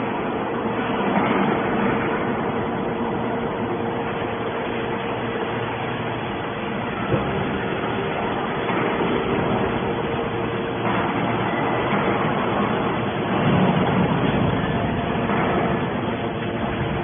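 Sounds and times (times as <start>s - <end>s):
hydraulic baler humming: 0.0s - 17.0s.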